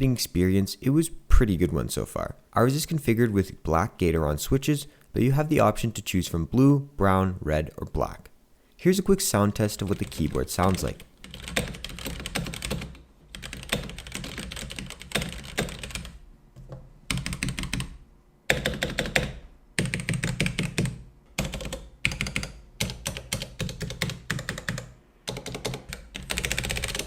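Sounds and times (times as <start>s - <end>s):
mechanical keyboard typing: 9.9s - 16.2s, 17.1s - 27.0s.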